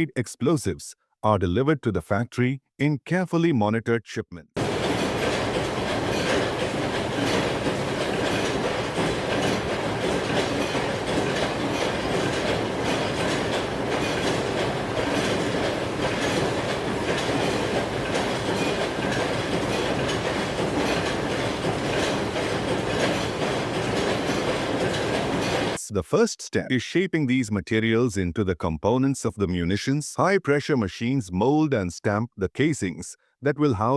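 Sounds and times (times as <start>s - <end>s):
train rumbling on rails: 4.6s - 25.8s
wheels clattering over track joints: 4.6s - 25.8s.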